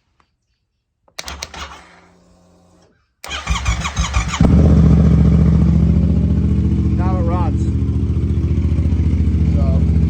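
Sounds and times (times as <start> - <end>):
motorcycle starter cranking: 1.2 - 2.2, 3.2 - 5.0
motorcycle engine idling: 4.0 - 10.0.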